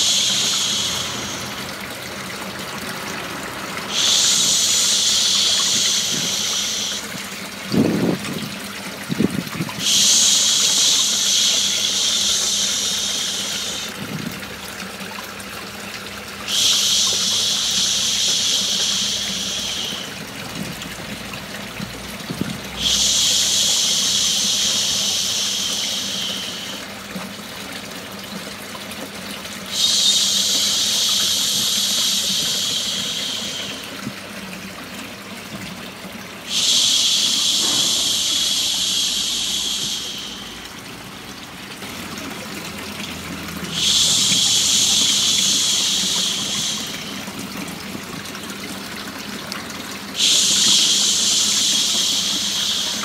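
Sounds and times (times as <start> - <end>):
person hushing shhh: 0.0 - 1.8, 3.9 - 7.2, 9.8 - 14.0, 16.4 - 20.2, 22.8 - 26.9, 29.7 - 34.0, 36.5 - 40.9, 43.7 - 47.2, 50.2 - 53.0
running water: 0.0 - 53.0.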